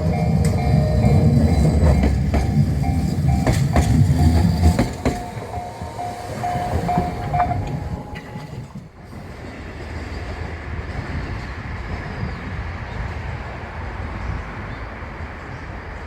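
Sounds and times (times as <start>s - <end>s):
level crossing alarm ringing: 0.0s - 8.7s
train rumble: 0.0s - 16.0s.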